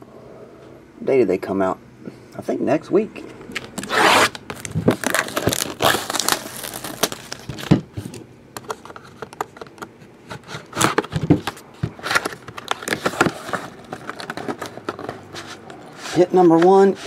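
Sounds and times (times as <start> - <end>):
plastic wrapper crinkling and tearing: 3.6 - 7.8.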